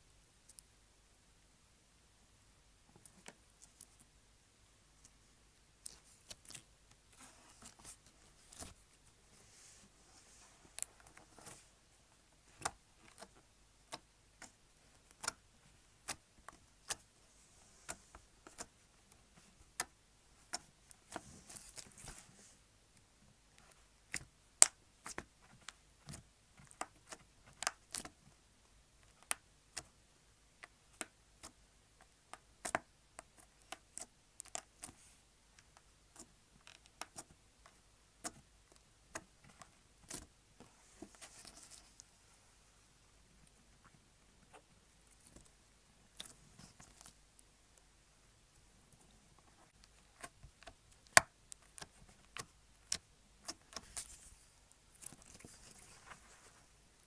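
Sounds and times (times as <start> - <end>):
slime squishing: 5.8 - 8.8, 32.3 - 35.1.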